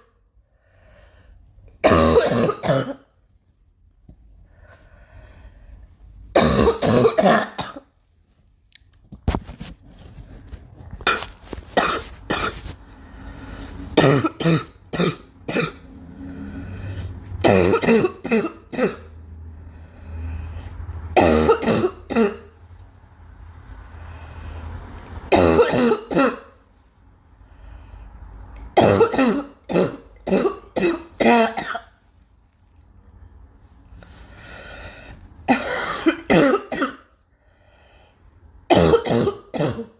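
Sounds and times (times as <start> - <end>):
girl coughing: 1.8 - 3.1, 6.3 - 7.9, 11.1 - 12.6, 14.0 - 15.8, 17.4 - 19.1, 21.2 - 22.5, 25.3 - 26.6, 28.8 - 32.0, 35.5 - 37.1, 38.7 - 39.9.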